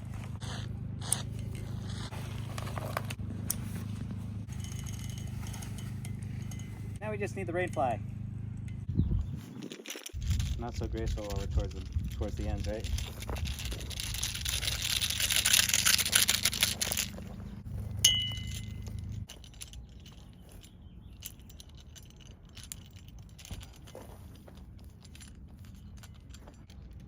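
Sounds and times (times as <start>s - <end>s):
gear clicks and rattles: 0.0s - 27.0s
sharp metal clink: 3.4s - 8.0s, 18.0s - 27.0s.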